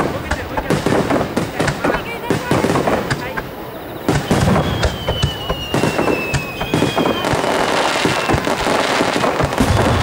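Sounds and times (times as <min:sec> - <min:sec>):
dense crackling: 0:00.0 - 0:10.0
fireworks bursting: 0:00.0 - 0:10.0
falling whistling tone: 0:03.6 - 0:08.6.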